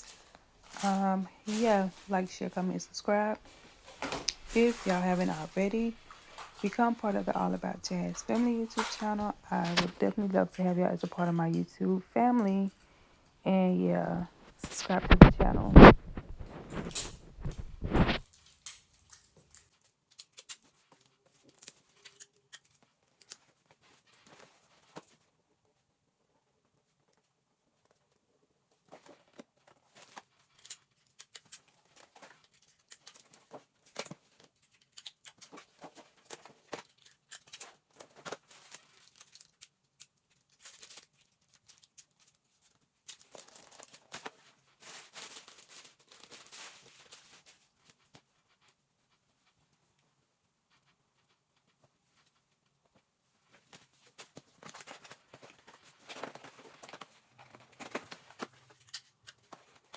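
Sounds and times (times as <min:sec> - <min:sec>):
packaging rustling and crinkling: 0:00.0 - 0:10.6, 0:14.5 - 0:19.7, 0:28.8 - 0:39.6, 0:40.2 - 0:48.2, 0:53.5 - 0:59.9.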